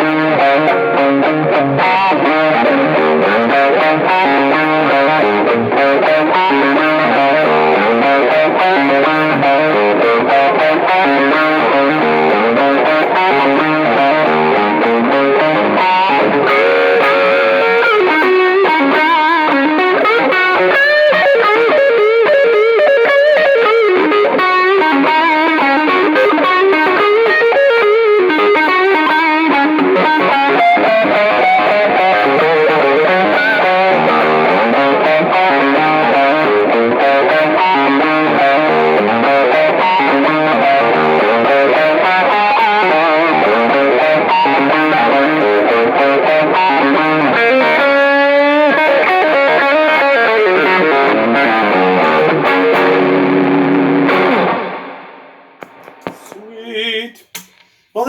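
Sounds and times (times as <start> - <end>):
overdriven electric guitar: 0.0 - 56.6.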